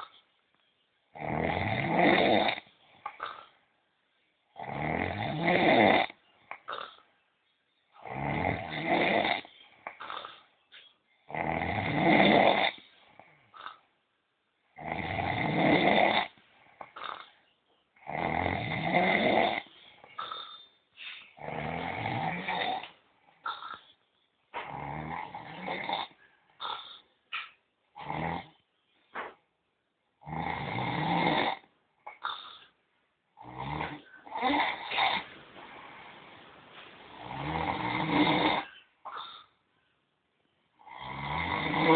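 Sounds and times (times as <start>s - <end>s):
man snoring loudly: 1.2s - 2.6s, 4.6s - 6.1s, 8.0s - 9.5s, 11.3s - 12.8s, 14.8s - 16.3s, 18.0s - 19.6s, 21.4s - 22.9s, 24.7s - 26.1s, 28.0s - 28.5s, 30.2s - 31.6s, 33.4s - 35.2s, 37.2s - 38.6s, 40.8s - 41.9s.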